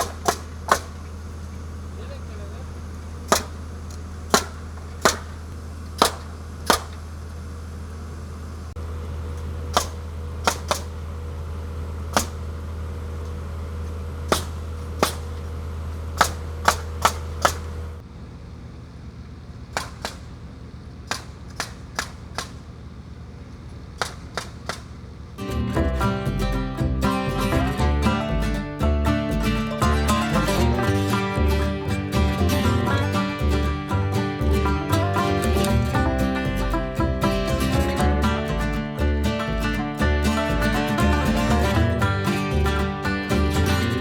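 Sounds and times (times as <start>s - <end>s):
nail gun cracks into wood: 0.0s - 1.2s, 3.3s - 7.1s, 9.7s - 11.0s, 12.1s - 12.5s, 14.3s - 15.5s, 16.2s - 17.8s, 19.7s - 20.4s, 21.1s - 22.8s, 24.0s - 25.0s
engine hum: 0.0s - 44.0s.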